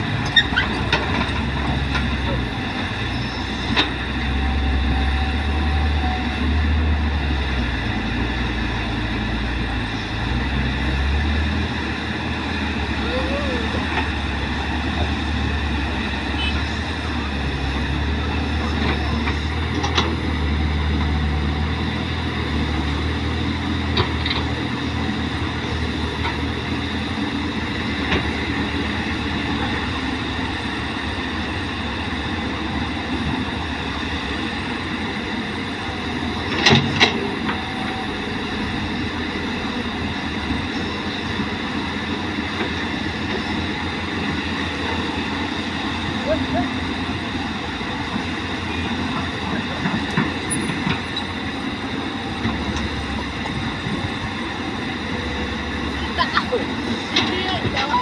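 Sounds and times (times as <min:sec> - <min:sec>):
excavator diesel engine running: 0:00.0 - 0:58.0.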